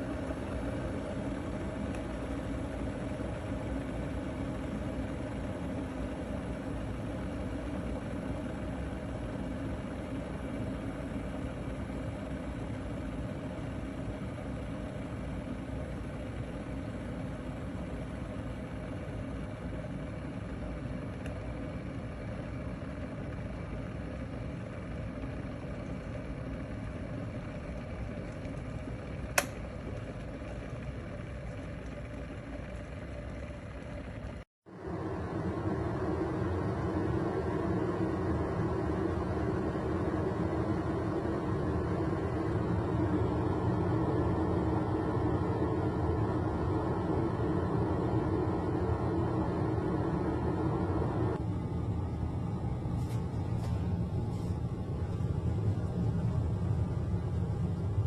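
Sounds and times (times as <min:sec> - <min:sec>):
electric kettle heating water: 0:00.0 - 0:58.0
kettle switch click: 0:29.3 - 0:29.6.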